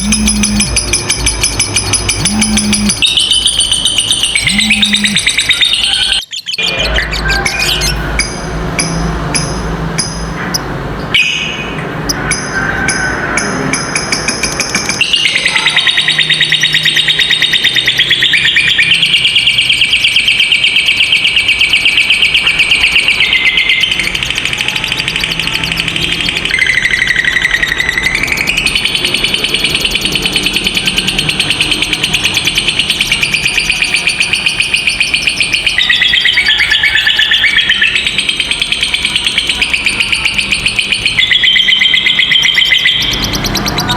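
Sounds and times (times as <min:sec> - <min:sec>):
lovebird rapid rattling trill: 0:00.0 - 0:06.2
lovebird chirping: 0:00.0 - 0:13.1, 0:13.7 - 0:43.9.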